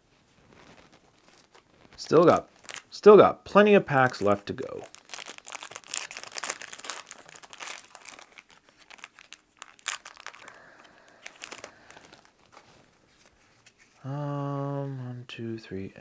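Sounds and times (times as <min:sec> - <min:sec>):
foil wrapper crinkling: 0:00.4 - 0:03.0, 0:03.9 - 0:13.5.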